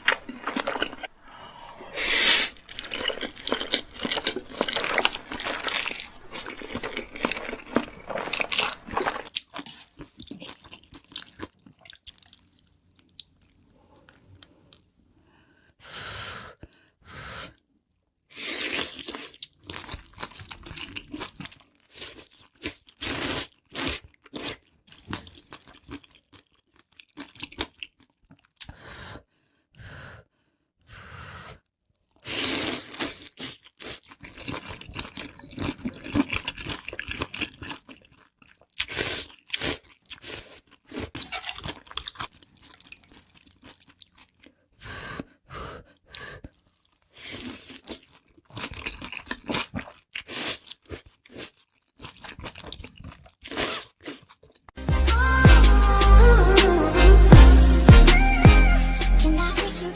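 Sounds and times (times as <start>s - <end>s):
crunchy food chewing: 0.0s - 14.5s, 18.6s - 28.7s, 31.9s - 44.7s, 46.0s - 54.8s.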